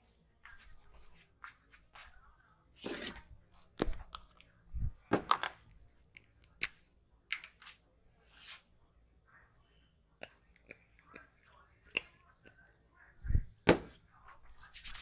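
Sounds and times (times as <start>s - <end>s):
hands rubbing hair and skin: 14.6s - 15.0s.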